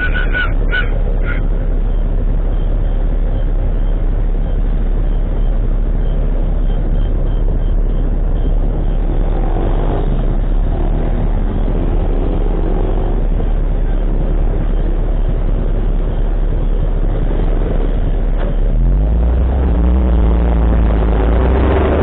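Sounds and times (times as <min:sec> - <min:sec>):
vehicle engine running: 0:00.0 - 0:22.0
wind rumble on microphone: 0:00.0 - 0:22.0.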